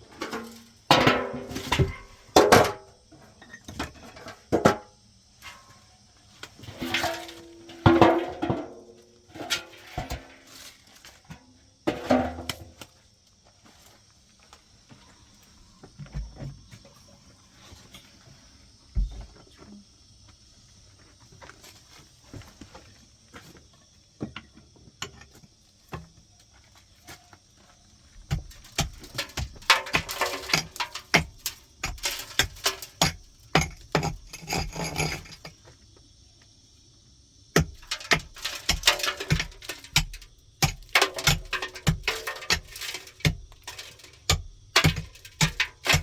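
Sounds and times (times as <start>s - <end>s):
knocks and scraping from handwork: 0.1s - 4.9s, 28.3s - 35.7s, 37.6s - 46.0s.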